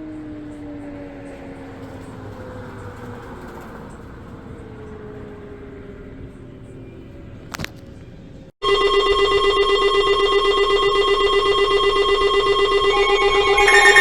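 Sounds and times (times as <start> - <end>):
pulsing multi-tone alert signal: 9.6 - 14.0.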